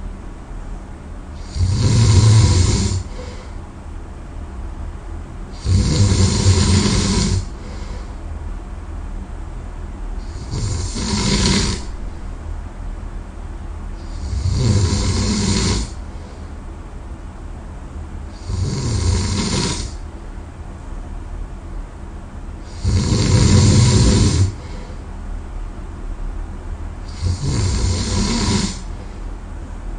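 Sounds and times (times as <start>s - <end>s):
quiet breathing: 1.3s - 3.7s, 5.5s - 8.3s, 14.0s - 16.7s, 22.6s - 25.2s, 27.1s - 29.4s
person snoring loudly: 1.4s - 3.5s, 5.5s - 8.0s, 10.2s - 11.9s, 14.0s - 16.0s, 18.3s - 20.0s, 22.6s - 24.8s, 27.0s - 29.0s.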